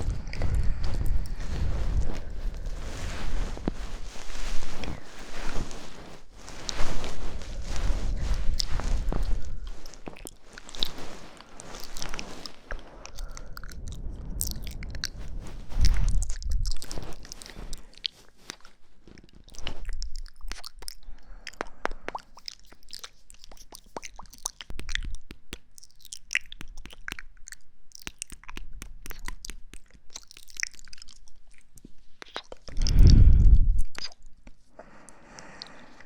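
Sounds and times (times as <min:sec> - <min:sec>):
soft low thumps: 0:00.0 - 0:10.0, 0:32.8 - 0:34.0.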